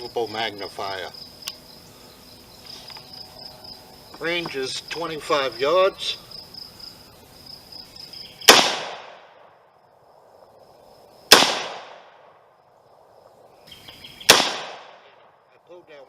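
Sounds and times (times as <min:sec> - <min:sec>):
crickets trilling: 0:00.0 - 0:16.0
rifle shots: 0:08.4 - 0:09.5, 0:11.3 - 0:12.4, 0:14.3 - 0:15.2.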